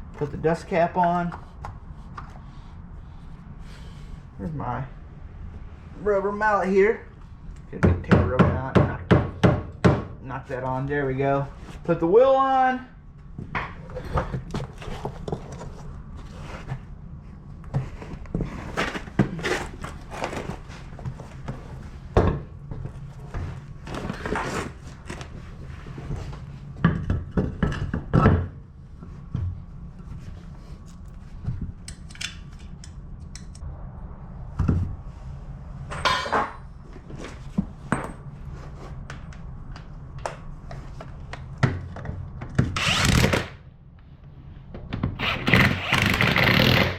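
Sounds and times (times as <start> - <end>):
steady low hum: 0.0 - 46.5
metal clinks and knocks: 35.9 - 36.7.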